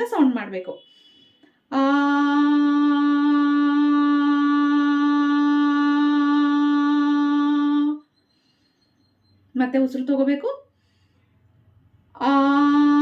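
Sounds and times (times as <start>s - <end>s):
person holding long aah: 1.7s - 8.0s, 12.2s - 13.0s.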